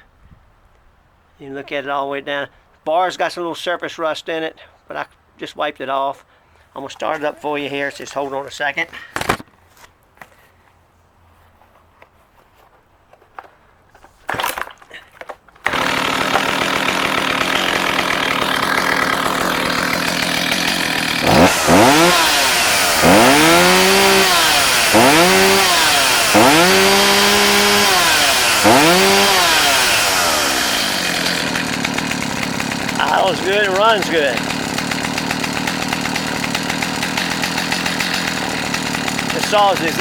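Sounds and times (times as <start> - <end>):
chainsaw pull start: 14.3 - 40.0
chainsaw idling and revving: 15.6 - 40.0.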